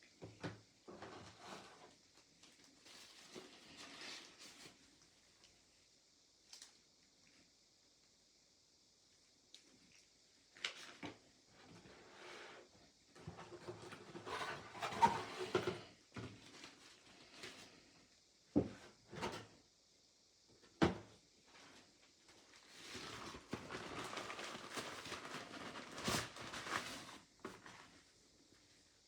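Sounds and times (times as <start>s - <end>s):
paper packaging rustling: 22.7s - 28.0s.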